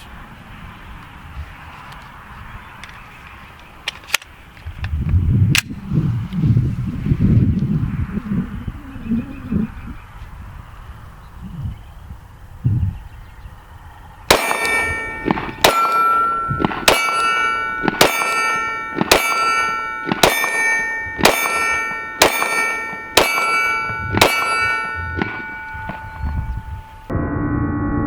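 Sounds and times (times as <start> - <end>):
pistol shots: 14.3 - 26.1
steel target ringing: 14.3 - 27.1.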